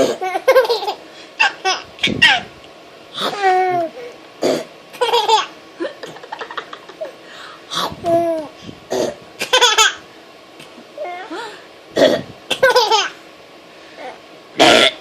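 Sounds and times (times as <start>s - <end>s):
baby girl laughing: 0.0s - 2.5s, 4.9s - 7.2s, 9.4s - 10.0s, 12.5s - 13.2s
woman making fake burps: 14.6s - 15.0s.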